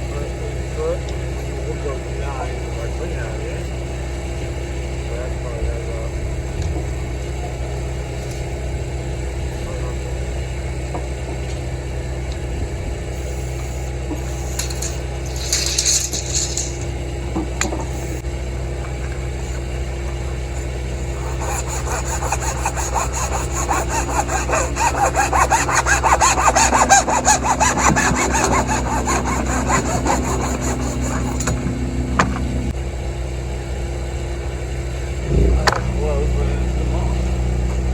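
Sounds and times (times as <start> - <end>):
low engine idle: 0.0 - 37.9
hand saw cutting pipe: 14.2 - 16.9, 21.0 - 32.2.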